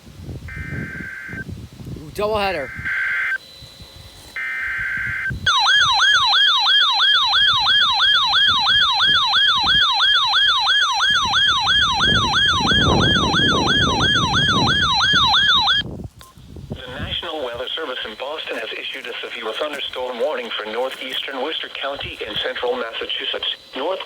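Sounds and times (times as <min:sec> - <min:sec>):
digital data header buzz: 0:00.4 - 0:01.6, 0:02.2 - 0:15.8, 0:21.3 - 0:24.0
siren-like attention tone: 0:00.5 - 0:01.5, 0:02.5 - 0:15.8.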